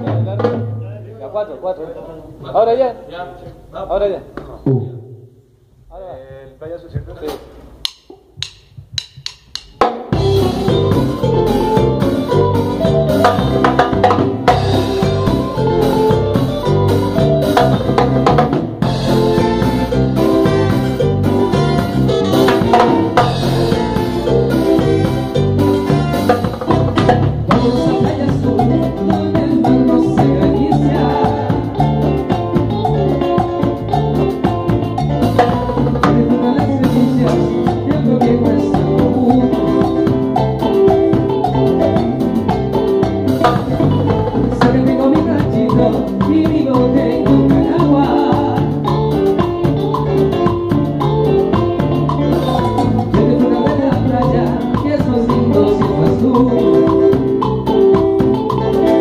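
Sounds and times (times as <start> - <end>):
salsa band playing live: 0.0 - 5.4, 6.8 - 59.0.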